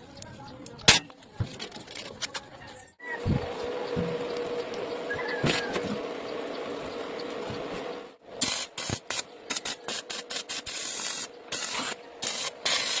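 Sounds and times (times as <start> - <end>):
welding arc crackling: 8.4 - 13.0.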